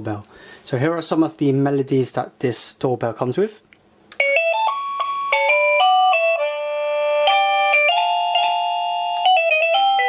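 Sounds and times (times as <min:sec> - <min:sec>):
doorbell chime electronic melody: 0:04.2 - 0:10.0.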